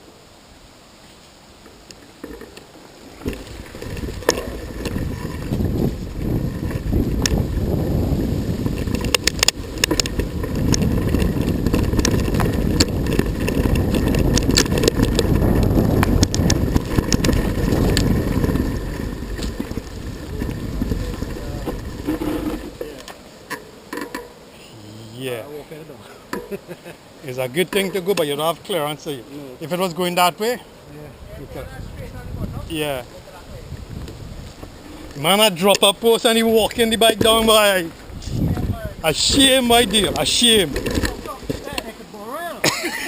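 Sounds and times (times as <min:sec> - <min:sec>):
wind rumble on microphone: 0:03.2 - 0:23.0, 0:31.0 - 0:35.4, 0:36.3 - 0:41.7
bicycle rattling and clicking: 0:03.2 - 0:24.3, 0:39.2 - 0:41.9.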